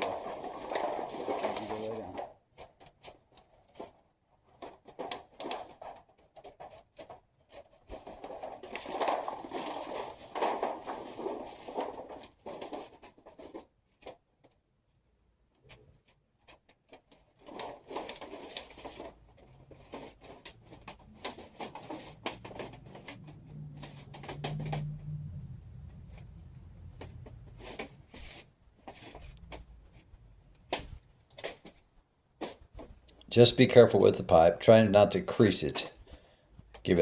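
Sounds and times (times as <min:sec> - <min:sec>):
thin metal sheet being handled: 0:00.0 - 0:14.2.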